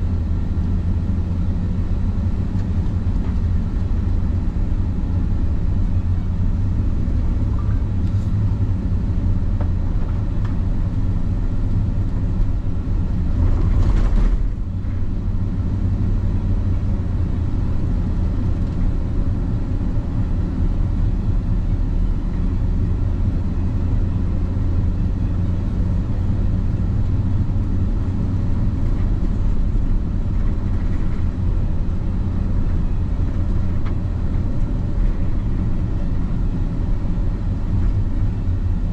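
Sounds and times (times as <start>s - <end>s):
car engine and road noise: 0.0s - 38.9s.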